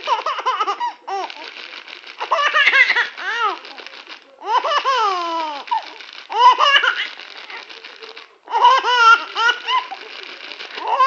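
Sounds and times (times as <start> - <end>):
baby laughing loudly: 0.0 - 1.4, 2.2 - 3.6, 4.4 - 7.2, 8.5 - 10.1, 10.8 - 11.0
plastic bag crinkling: 0.0 - 11.0.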